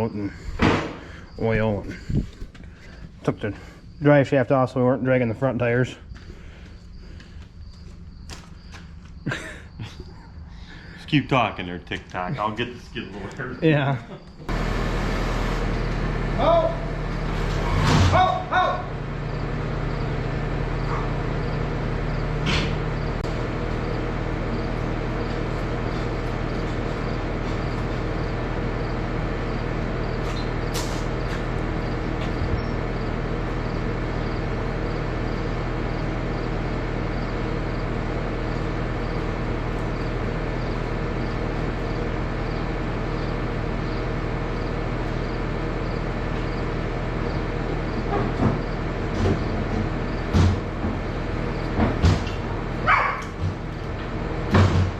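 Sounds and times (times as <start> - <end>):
skid loader engine running: 12.1 - 54.9
metal clanks and knocks: 53.2 - 54.9.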